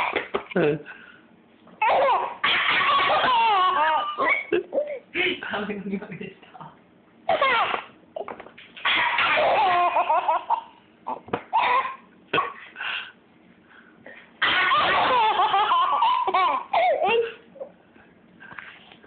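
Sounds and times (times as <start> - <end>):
child coughing: 1.8 - 4.5, 7.3 - 7.9, 11.6 - 12.6, 14.4 - 15.4
child laughing: 1.8 - 5.1, 7.3 - 12.0, 14.5 - 17.8.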